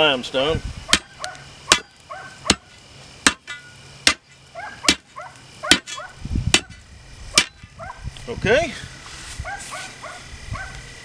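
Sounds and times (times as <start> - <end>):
steel bar striking stone ground: 0.9 - 1.9, 2.5 - 6.0, 6.6 - 6.8, 7.4 - 7.7
dog barking short high calls: 9.4 - 10.7.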